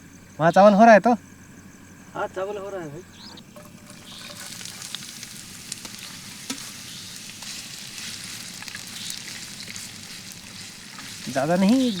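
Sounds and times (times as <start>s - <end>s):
onions sizzling in hot oil: 3.4s - 12.0s.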